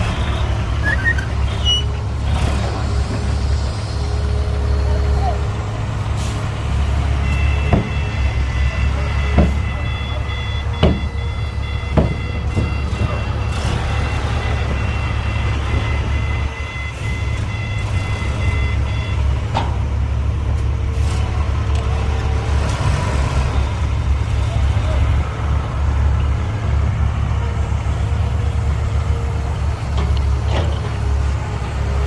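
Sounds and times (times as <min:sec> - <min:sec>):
heavy diesel machinery rumbling: 0:00.0 - 0:32.0
back-up alarm beeping: 0:07.2 - 0:19.5
sharp metallic knocks: 0:10.8 - 0:11.2, 0:11.9 - 0:13.1.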